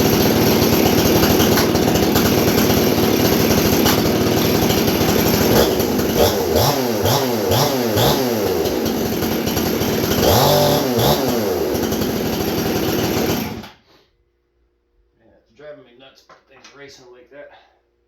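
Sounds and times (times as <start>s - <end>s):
chainsaw revving: 0.0s - 13.8s.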